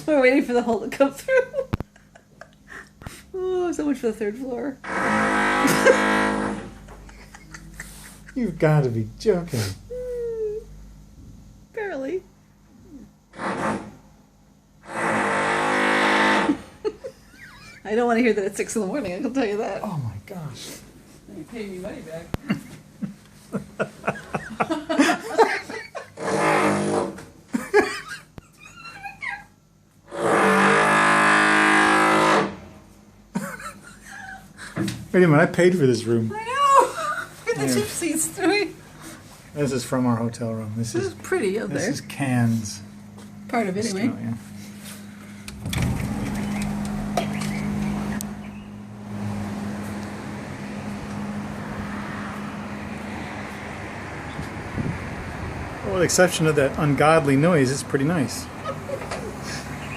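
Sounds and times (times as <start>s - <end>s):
people laughing: 1.1s - 3.0s, 5.6s - 6.2s, 6.8s - 8.6s, 16.8s - 17.9s, 22.4s - 26.2s, 27.5s - 29.6s, 33.4s - 34.8s, 36.5s - 39.2s, 58.5s - 59.7s
drill buzzing into ceiling: 4.8s - 6.8s, 13.3s - 14.1s, 14.8s - 17.0s, 25.8s - 27.3s, 30.1s - 32.8s.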